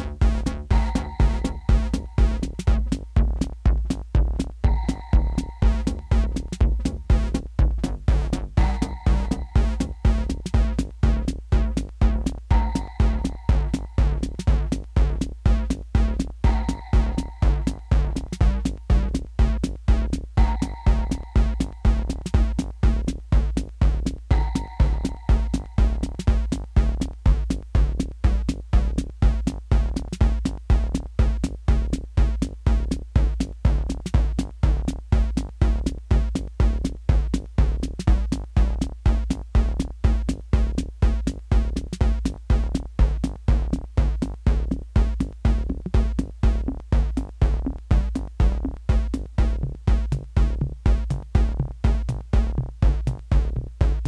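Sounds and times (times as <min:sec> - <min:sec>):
pulsing synth bass line: 0:00.0 - 0:54.0
techno kick drum: 0:00.0 - 0:54.0
high synth note: 0:04.7 - 0:06.2, 0:08.6 - 0:10.0, 0:16.5 - 0:18.1, 0:20.4 - 0:22.0, 0:24.4 - 0:26.1.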